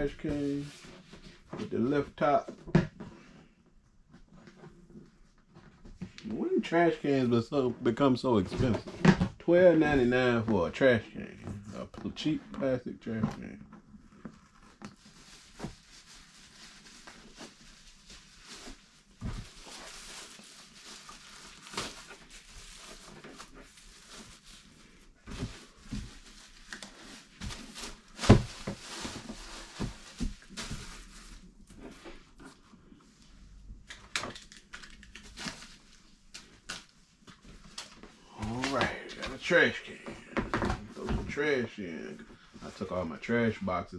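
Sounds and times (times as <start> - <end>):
plastic trash can rustling and knocking: 27.4 - 31.0.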